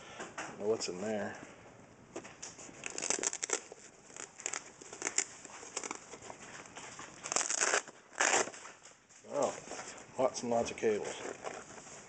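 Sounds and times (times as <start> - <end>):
packaging bag crinkling: 2.7 - 8.8.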